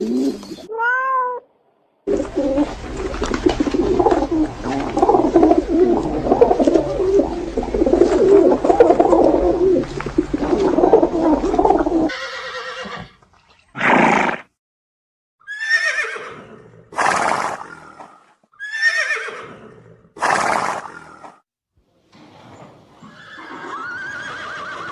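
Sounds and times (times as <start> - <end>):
animal calls: 2.1 - 12.9.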